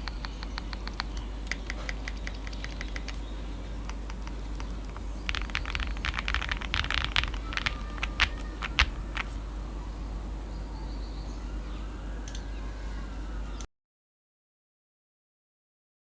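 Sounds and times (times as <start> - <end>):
mechanical keyboard typing: 0.0 - 9.4.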